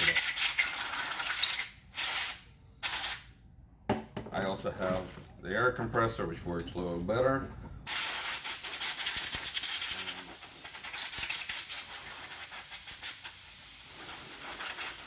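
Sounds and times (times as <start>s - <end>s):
compressed air hissing from nozzle: 0.0s - 3.4s, 7.8s - 15.0s.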